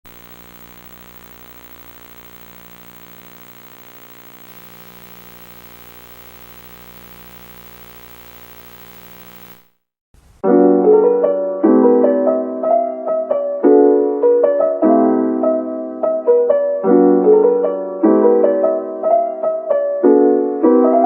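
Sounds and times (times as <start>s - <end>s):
faint steady drone: 0.1s - 10.4s.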